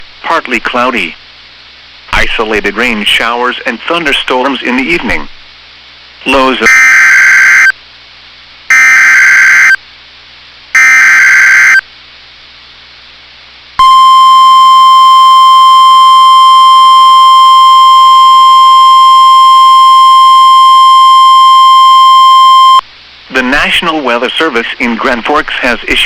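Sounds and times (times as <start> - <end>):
steady warning alarm tone: 6.6 - 7.8, 8.7 - 9.8, 10.8 - 11.8, 13.8 - 22.8
harsh digital header bursts: 8.7 - 9.8, 10.8 - 11.8.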